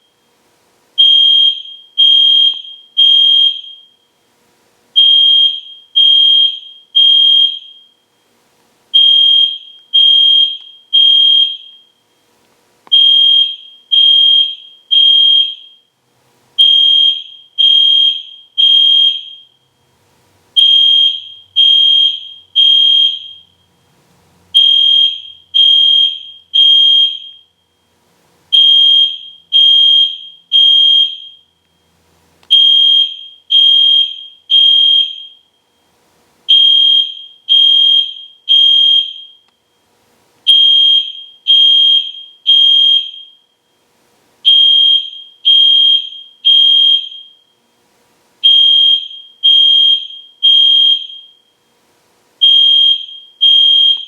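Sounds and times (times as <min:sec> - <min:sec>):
fire alarm horn blasts: 0:01.0 - 0:04.1, 0:05.0 - 0:08.0, 0:08.9 - 0:12.0, 0:12.9 - 0:15.9, 0:16.6 - 0:19.6, 0:20.6 - 0:23.8, 0:24.5 - 0:27.9, 0:28.5 - 0:31.5, 0:32.5 - 0:35.8, 0:36.5 - 0:39.8, 0:40.5 - 0:43.8, 0:44.4 - 0:47.6, 0:48.4 - 0:51.6, 0:52.4 - 0:54.0.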